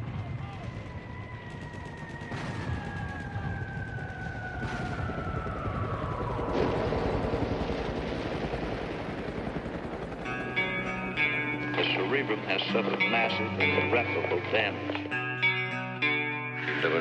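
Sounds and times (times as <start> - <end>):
rapid gunfire: 0.0 - 5.8.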